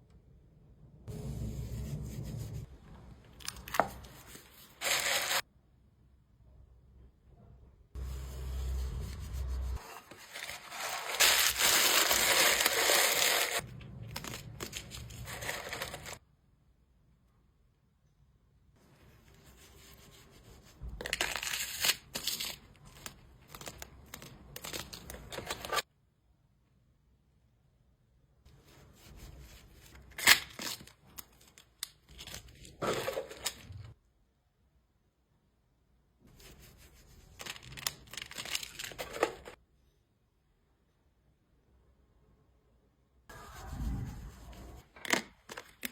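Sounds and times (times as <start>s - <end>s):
packaging crinkling: 10.1s - 16.2s.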